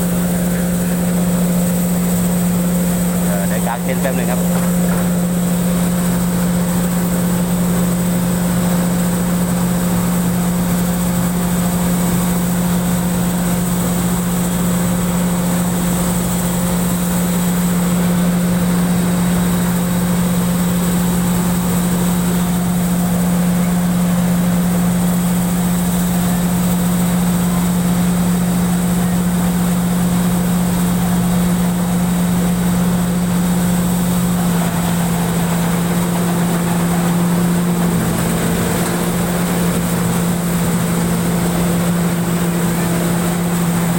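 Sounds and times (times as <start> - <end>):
combine harvester droning: 0.0 - 43.9.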